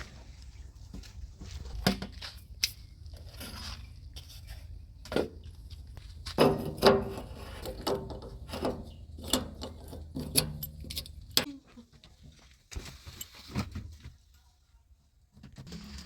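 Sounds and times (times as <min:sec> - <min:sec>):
metallic clanks and rattles: 0:06.0 - 0:11.5.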